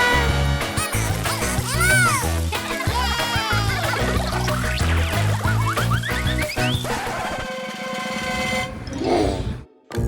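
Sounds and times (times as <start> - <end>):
upbeat music with bass beat: 0.6 - 7.4.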